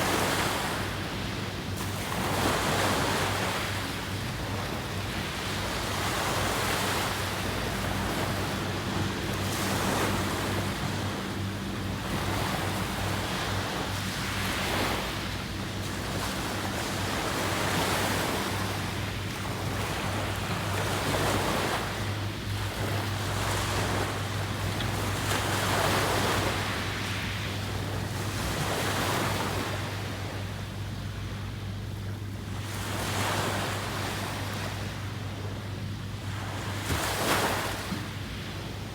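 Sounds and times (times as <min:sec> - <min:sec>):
ocean waves washing onto shore: 0:00.0 - 0:38.9
steady low hum: 0:00.8 - 0:37.1.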